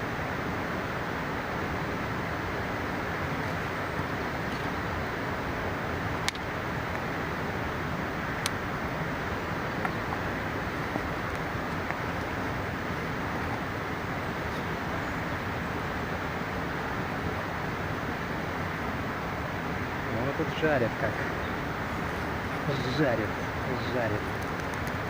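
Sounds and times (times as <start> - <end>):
mountain river rushing: 0.0 - 25.0
campfire crackling and popping: 3.0 - 14.9, 21.0 - 25.0.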